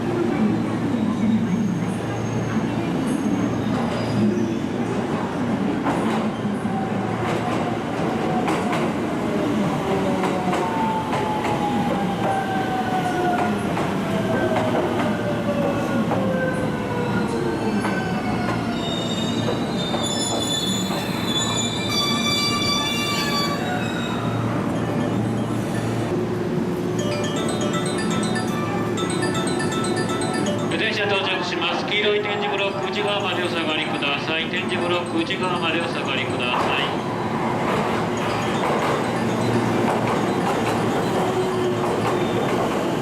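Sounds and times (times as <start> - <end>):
brakes and wheels squealing: 18.8 - 25.9.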